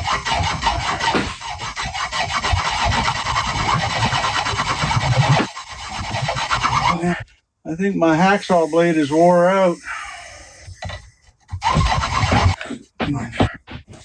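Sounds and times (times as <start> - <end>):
hacksaw cutting metal: 0.0 - 7.1, 10.8 - 12.8.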